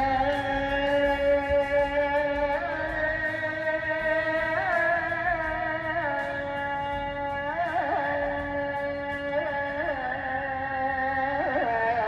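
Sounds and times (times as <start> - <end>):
steady drone: 0.0 - 12.0.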